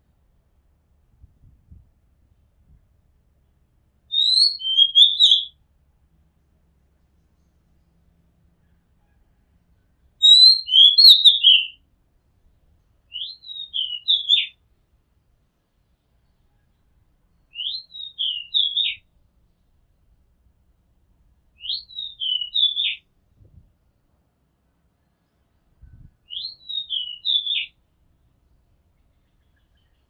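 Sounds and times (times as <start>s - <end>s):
bird singing whistled phrases: 4.1s - 5.5s, 10.2s - 11.8s, 13.1s - 14.5s, 17.5s - 19.0s, 21.6s - 23.0s, 26.3s - 27.7s.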